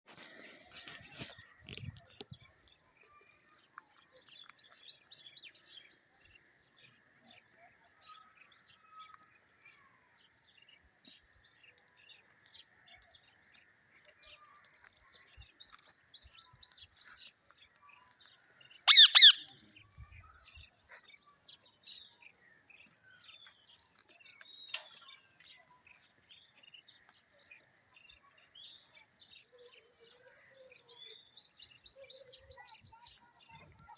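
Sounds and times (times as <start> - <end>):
parrot chattering chirps: 18.9 - 19.5
parrot screeching: 18.9 - 19.5.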